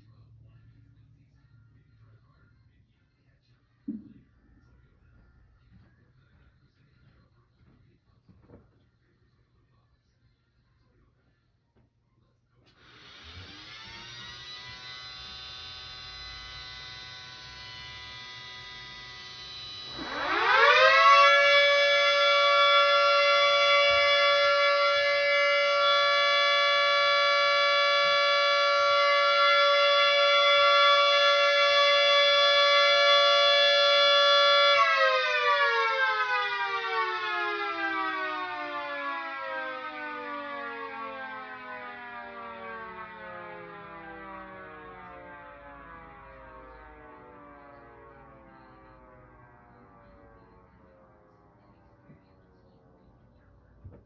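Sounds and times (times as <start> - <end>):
faint falling siren tone: 12.8 - 54.0
rotor siren wailing: 12.8 - 54.0.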